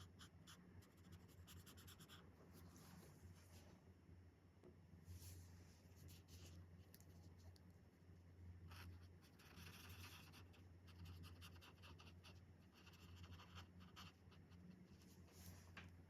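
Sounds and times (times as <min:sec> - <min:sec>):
steady low hum: 0:00.0 - 0:16.0
marker scratching on paper: 0:08.7 - 0:14.6.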